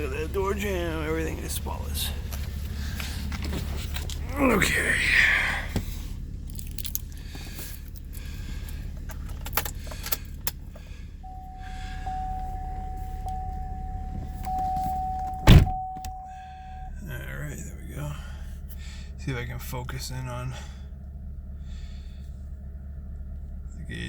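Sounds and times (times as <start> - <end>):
low steady hum: 0.0 - 24.0
car door shutting: 11.3 - 16.9
electronic warning chime: 11.3 - 17.0.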